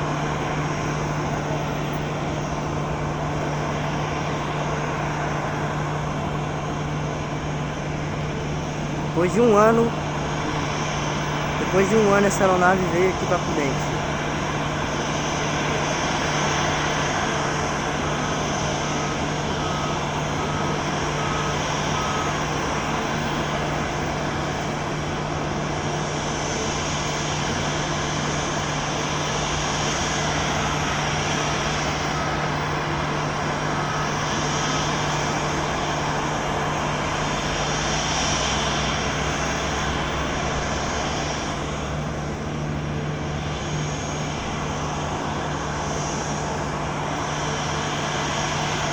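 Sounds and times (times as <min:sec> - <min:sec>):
jet engines running: 0:00.0 - 0:48.9.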